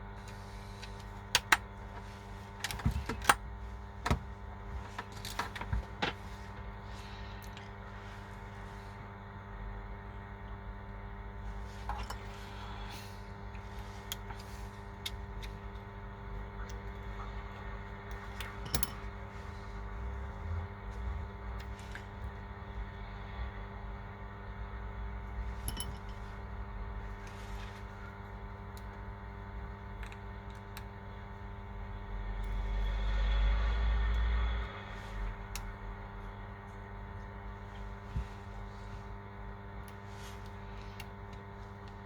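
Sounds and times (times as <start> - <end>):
electrical hum: 0.0 - 42.0.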